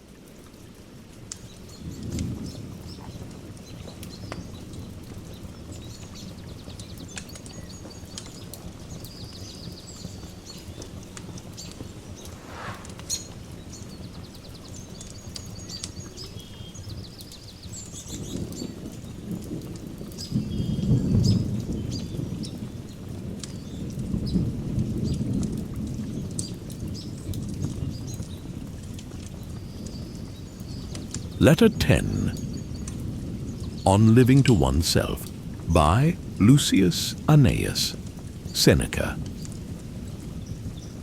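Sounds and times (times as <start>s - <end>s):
steady hiss with crackles: 12.0s - 13.8s, 31.2s - 32.9s, 33.8s - 41.0s.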